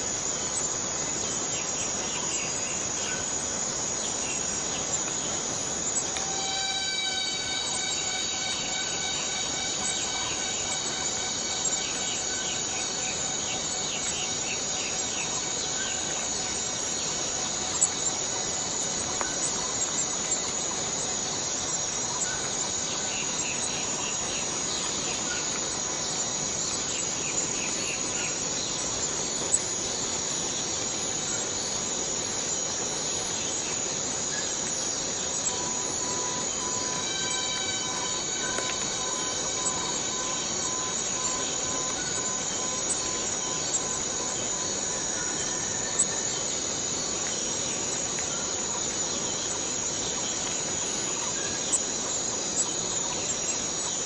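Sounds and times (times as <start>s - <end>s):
cicada chorus buzzing: 0.0s - 54.0s
faint ticks: 19.0s - 20.6s, 38.3s - 39.0s.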